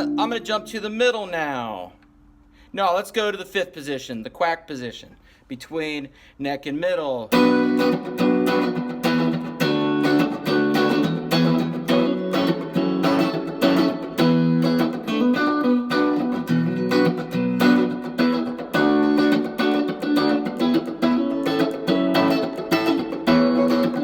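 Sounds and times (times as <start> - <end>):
electric guitar through an amp: 0.0 - 1.0, 7.3 - 24.0.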